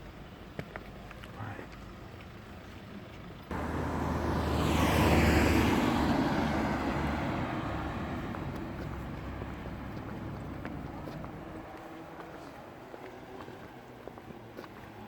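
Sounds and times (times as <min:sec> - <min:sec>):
motor vehicle passing by: 0:03.4 - 0:15.0.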